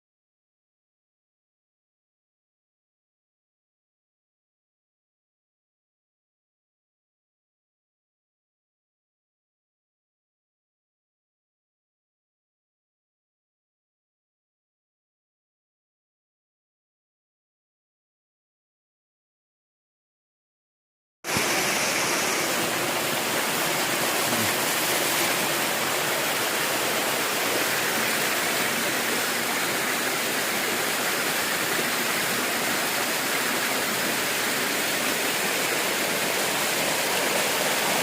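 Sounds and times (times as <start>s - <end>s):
waterfall pouring: 21.3s - 38.0s.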